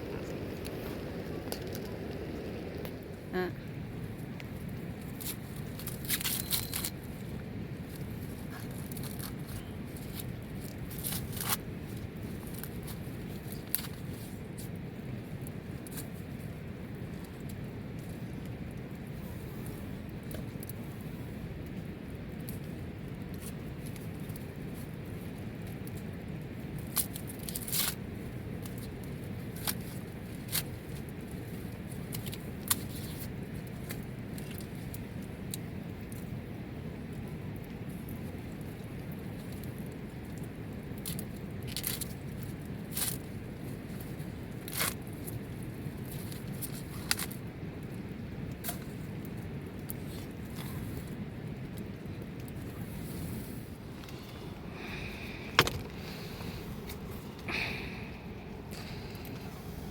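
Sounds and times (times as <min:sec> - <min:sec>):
steady rain: 0:00.0 - 0:06.3.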